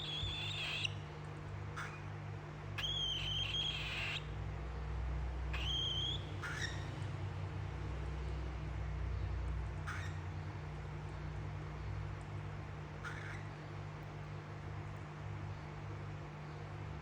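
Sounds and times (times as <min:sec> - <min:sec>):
cockatiel whistling: 0:00.0 - 0:00.9, 0:02.8 - 0:04.2, 0:05.6 - 0:06.7.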